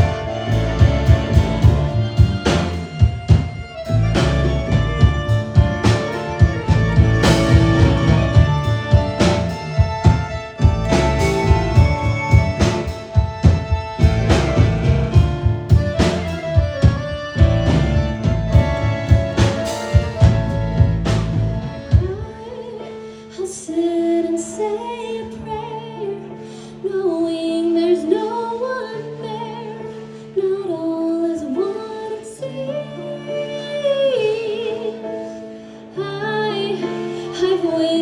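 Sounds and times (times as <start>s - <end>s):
instrumental rock band playing: 0.0s - 22.5s.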